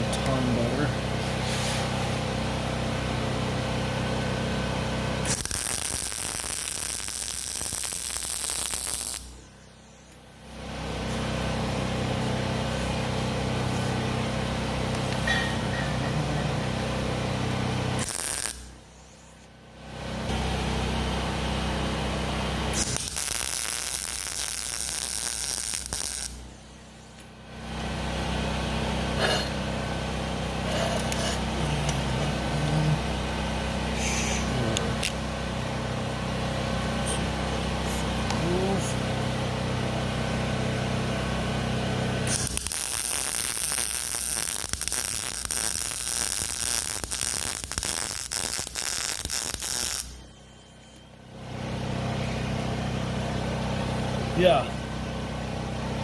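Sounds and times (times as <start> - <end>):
low electrical hum: 0.0 - 56.0
crackling welding arc: 5.2 - 9.4, 12.8 - 19.4, 21.9 - 26.5, 30.1 - 50.3.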